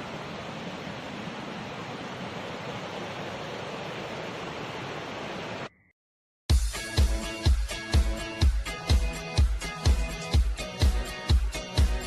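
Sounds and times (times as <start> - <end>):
waterfall roaring: 0.0 - 5.7.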